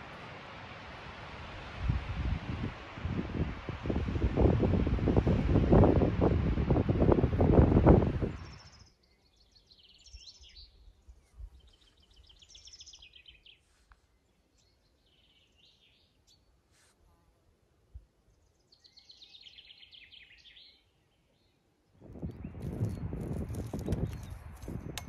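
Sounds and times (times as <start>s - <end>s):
songbird singing: 8.3s - 16.6s, 18.2s - 25.0s.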